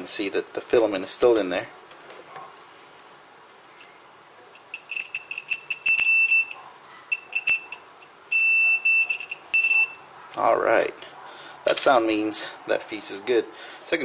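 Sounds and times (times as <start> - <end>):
multimeter continuity beep: 4.7 - 10.1.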